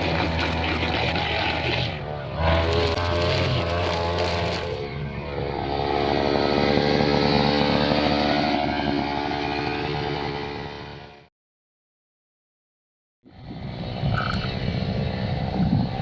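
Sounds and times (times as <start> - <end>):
brush cutter engine running: 0.0 - 4.8.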